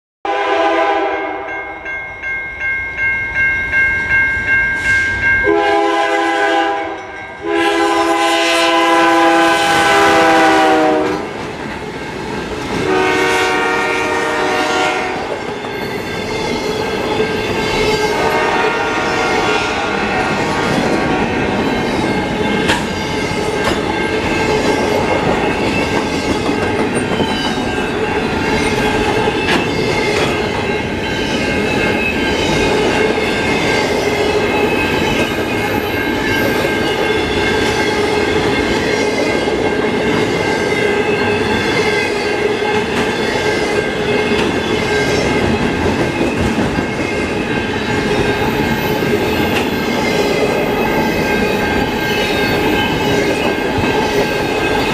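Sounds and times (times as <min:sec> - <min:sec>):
high ringing tones: 0:01.1 - 0:05.9, 0:15.4 - 0:18.4, 0:21.2 - 0:54.9
train wheels rumbling on rail: 0:04.8 - 0:54.9
rail clicks: 0:19.4 - 0:54.9.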